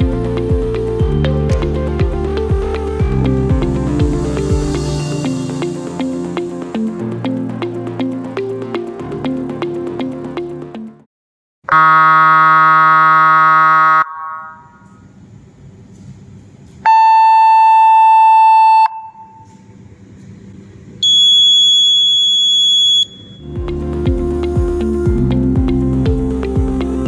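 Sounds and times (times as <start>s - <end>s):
electronic alarm blasts: 11.7s - 15.0s, 16.8s - 19.5s, 21.0s - 23.5s.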